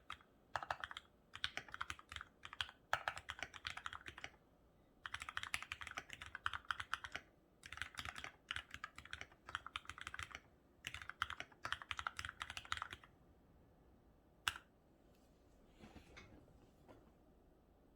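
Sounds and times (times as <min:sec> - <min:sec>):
mechanical keyboard typing: 0:00.0 - 0:04.4, 0:05.0 - 0:13.1, 0:14.5 - 0:14.7.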